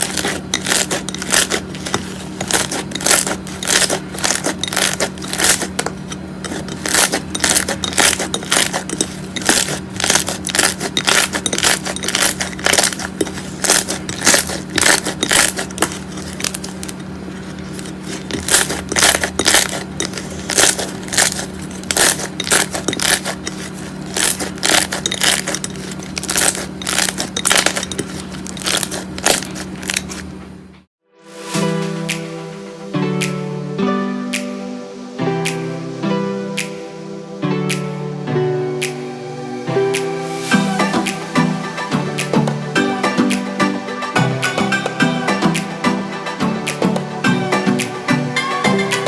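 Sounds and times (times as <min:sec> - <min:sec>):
steady low hum: 0:00.0 - 0:30.9.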